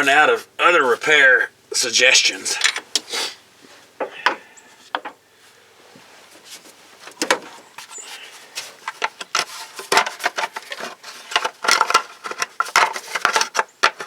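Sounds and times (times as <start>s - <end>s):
hand tools clicking and rattling: 8.6s - 14.0s.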